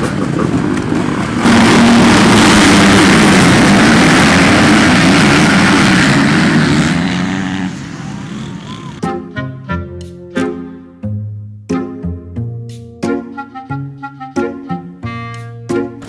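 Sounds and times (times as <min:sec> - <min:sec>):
motocross bikes racing at high revs: 0:00.0 - 0:09.0.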